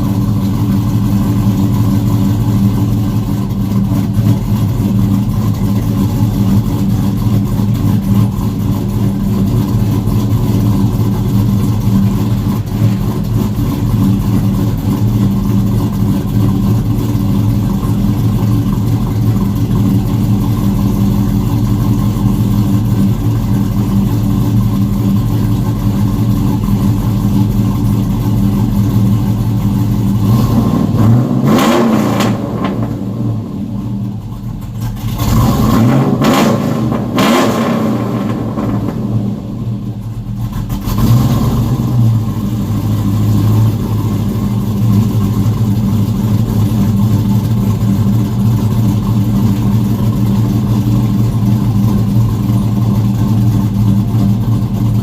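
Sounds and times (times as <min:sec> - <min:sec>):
engine idling: 0:00.0 - 0:55.0
engine revving: 0:30.1 - 0:34.2, 0:35.0 - 0:52.8.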